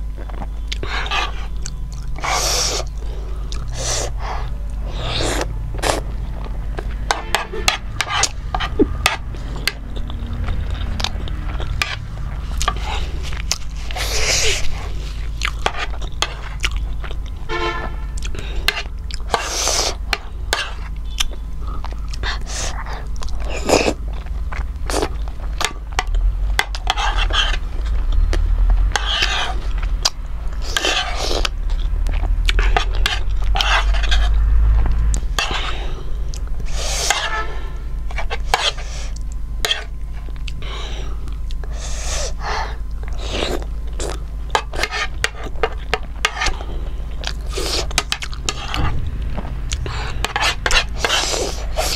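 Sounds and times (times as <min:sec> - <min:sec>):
person chewing: 0:00.0 - 0:17.5, 0:18.1 - 0:37.4, 0:38.1 - 0:51.9
low hum: 0:00.0 - 0:51.9
sharp breaths through mouth: 0:40.6 - 0:42.8.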